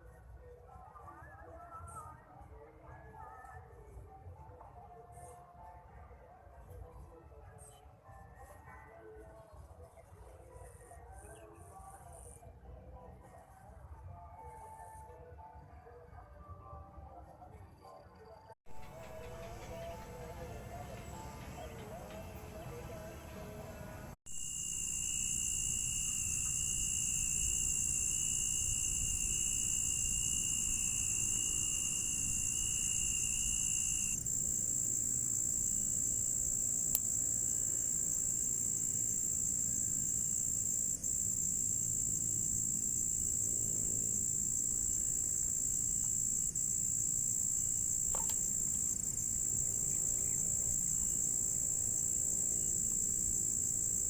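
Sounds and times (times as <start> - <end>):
high-pitched insect chorus: 24.3 - 54.0
lower insect trill: 24.3 - 54.0.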